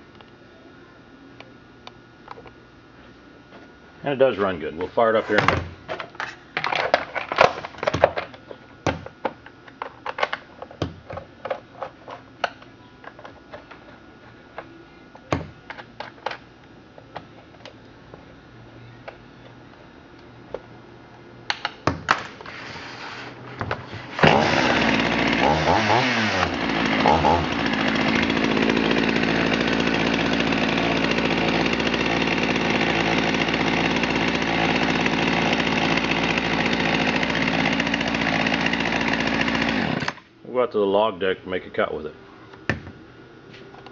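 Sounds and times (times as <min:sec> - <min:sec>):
chainsaw engine running: 0:24.0 - 0:40.2.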